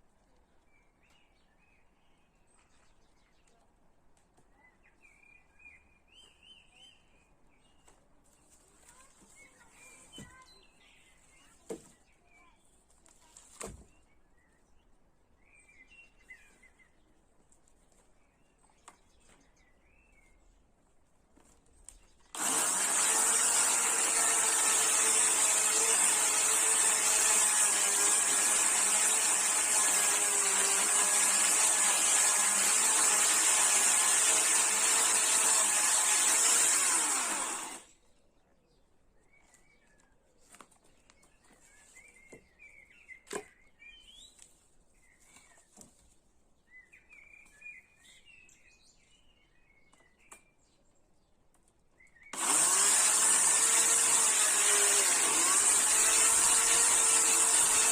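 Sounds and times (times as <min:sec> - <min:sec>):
faint birds chirping: 0:00.0 - 0:22.4, 0:36.8 - 0:52.4
chainsaw running: 0:22.3 - 0:37.9, 0:52.3 - 0:57.9.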